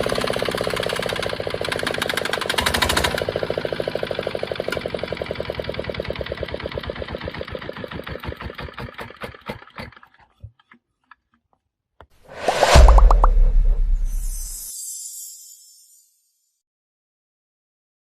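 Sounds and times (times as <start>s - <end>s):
diesel engine knocking: 0.0s - 9.5s.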